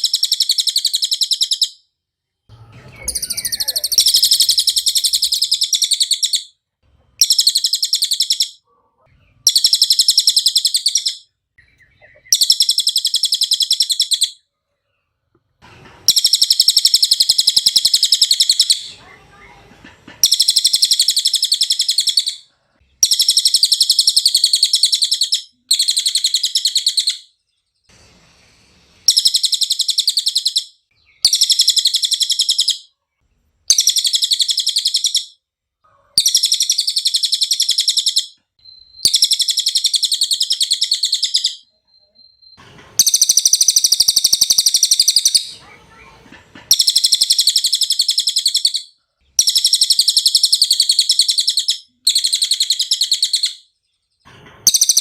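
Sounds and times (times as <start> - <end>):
bird singing high rapid trills: 2.5 - 6.5, 36.2 - 45.8, 46.7 - 53.6, 54.7 - 55.0.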